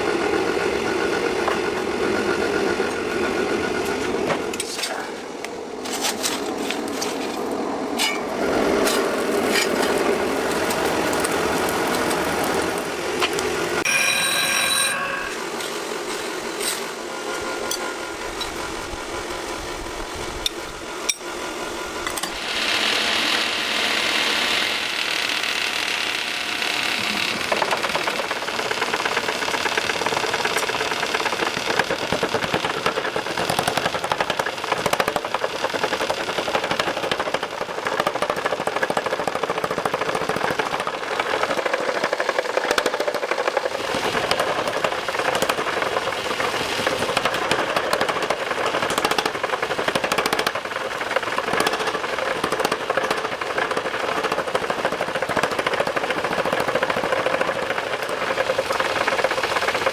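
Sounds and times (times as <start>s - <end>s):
steady machine noise: 0.0s - 59.9s
rapid mechanical hammering: 24.8s - 46.0s, 46.8s - 59.9s.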